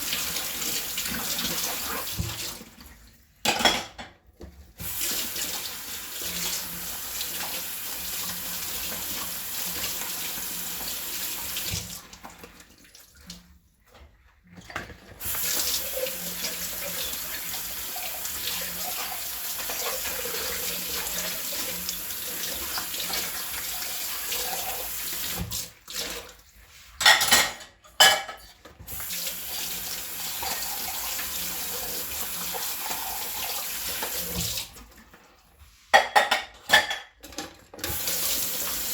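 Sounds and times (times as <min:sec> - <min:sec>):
dishes clattering: 0:03.4 - 0:04.2, 0:27.0 - 0:28.6, 0:35.9 - 0:37.8
tap running into sink: 0:32.4 - 0:34.8.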